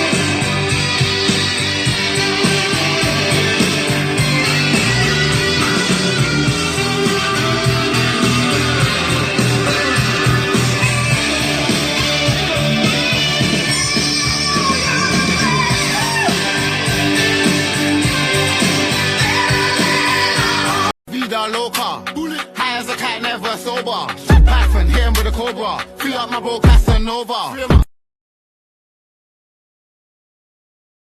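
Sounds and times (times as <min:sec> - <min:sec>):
loud rock guitar: 0:00.0 - 0:20.9
person singing: 0:00.0 - 0:27.9.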